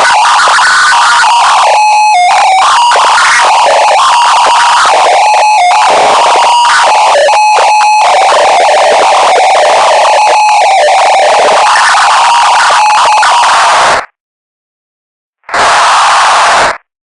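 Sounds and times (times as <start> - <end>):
distorted synthesizer melody: 0.0 - 13.2.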